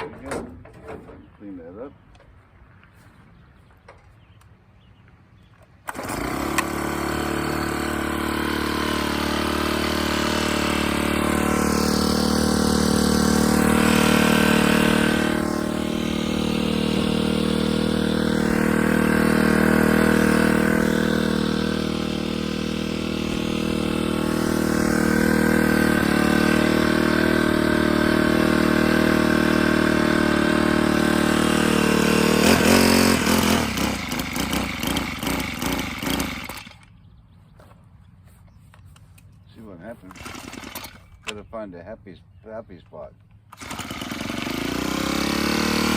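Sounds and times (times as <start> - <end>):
string trimmer engine running: 5.8 - 37.1, 39.8 - 41.5, 43.4 - 45.9.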